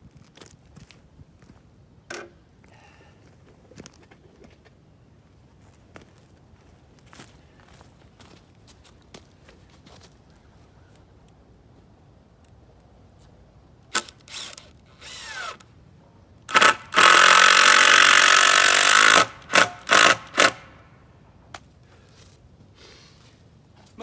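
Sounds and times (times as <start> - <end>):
power drill driving into wood: 13.9 - 15.6, 16.5 - 20.7.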